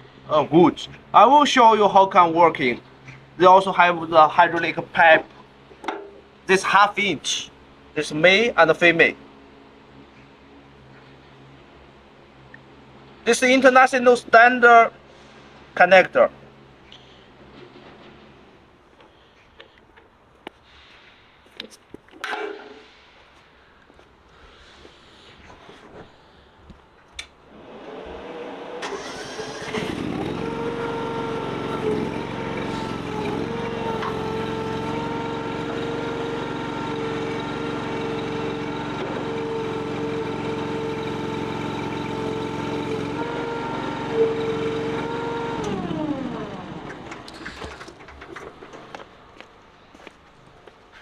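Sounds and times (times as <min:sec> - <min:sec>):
small engine starting and running: 0:00.0 - 0:11.7, 0:27.5 - 0:50.1.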